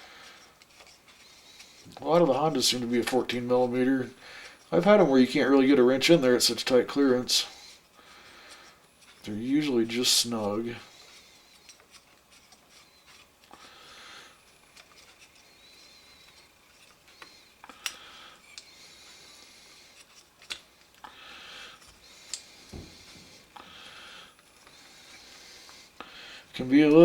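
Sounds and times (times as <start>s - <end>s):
dull thump: 22.7s - 23.4s.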